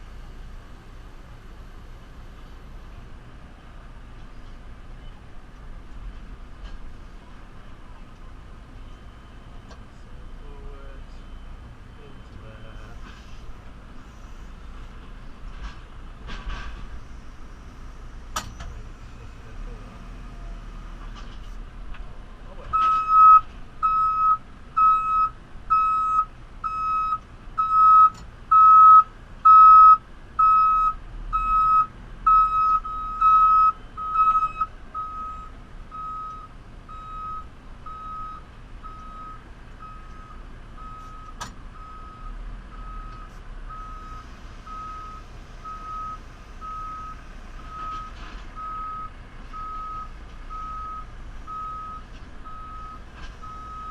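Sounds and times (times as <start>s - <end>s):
reversing alarm beeping: 10.3s - 13.1s, 22.8s - 53.9s.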